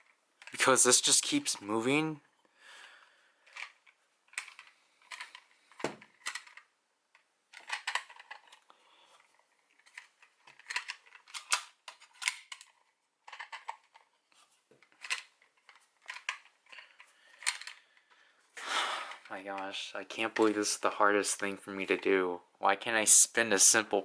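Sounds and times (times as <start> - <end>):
plastic toy clicks and clacks: 3.4 - 6.7, 7.5 - 8.6, 9.2 - 14.1, 14.8 - 18.1.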